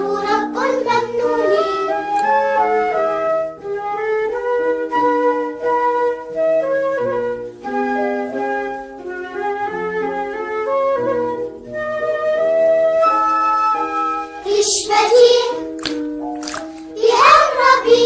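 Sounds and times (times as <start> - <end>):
flute-like melody: 1.3 - 14.5.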